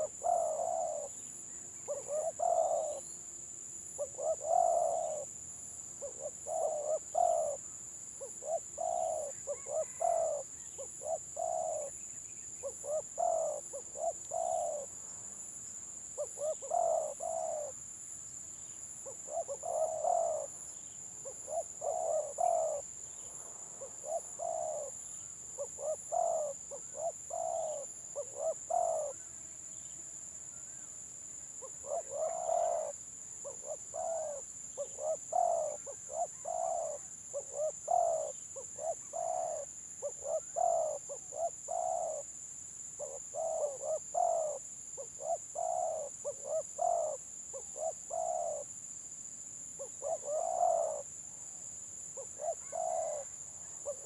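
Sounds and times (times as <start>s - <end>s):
doves cooing: 0.0s - 1.2s, 1.8s - 3.1s, 4.0s - 5.3s, 6.0s - 12.0s, 12.6s - 14.9s, 16.2s - 17.8s, 19.0s - 20.6s, 21.2s - 25.0s, 25.6s - 29.3s, 31.6s - 42.3s, 43.0s - 48.7s, 49.8s - 51.1s, 52.2s - 54.0s.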